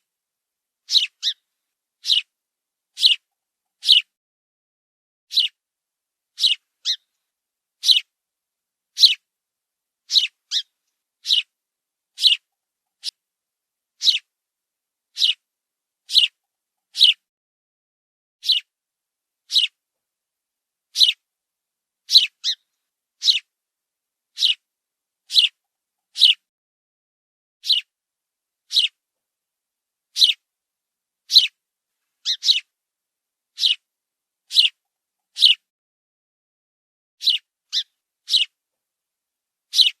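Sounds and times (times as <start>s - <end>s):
sparrow chirping: 0.8s - 2.3s, 3.0s - 4.1s, 5.3s - 5.6s, 6.3s - 7.2s, 7.8s - 8.2s, 8.9s - 9.3s, 10.0s - 13.2s, 14.0s - 14.3s, 15.1s - 15.4s, 16.0s - 17.2s, 18.4s - 18.7s, 19.4s - 19.8s, 20.9s - 21.2s, 22.0s - 23.5s, 24.3s - 26.4s, 27.6s - 27.9s, 28.6s - 29.0s, 30.1s - 30.4s, 31.2s - 31.6s, 32.2s - 32.7s, 33.5s - 33.9s, 34.5s - 35.6s, 37.2s - 38.6s, 39.7s - 40.0s.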